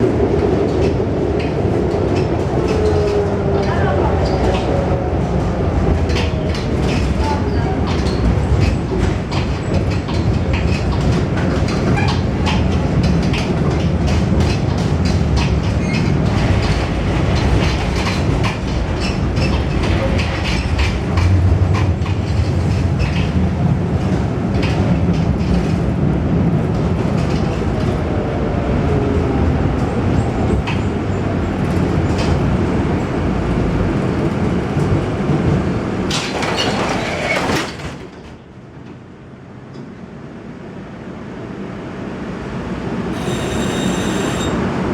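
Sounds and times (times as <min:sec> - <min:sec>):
rapid clicks from rails: 0:00.0 - 0:39.0
tramcar rumbling on track: 0:00.0 - 0:44.9.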